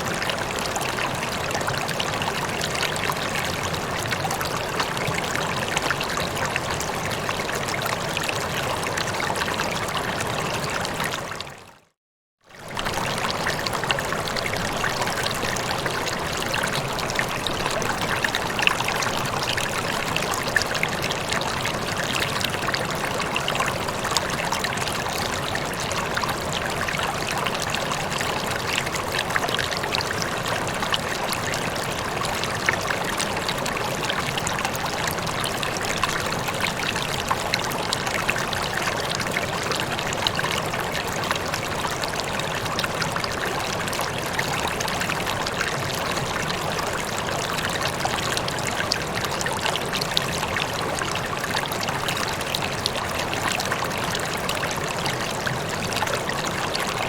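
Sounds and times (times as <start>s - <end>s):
water trickling: 12.5s - 57.0s.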